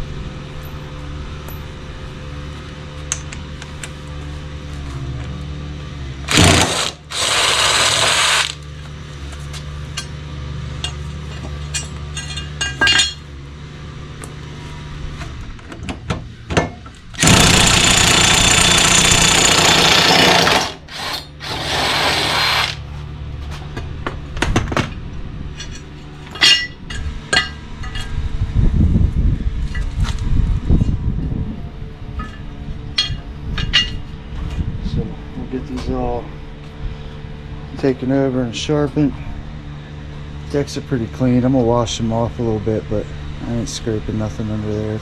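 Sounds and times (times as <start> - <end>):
impact wrench hammering: 6.3 - 8.6.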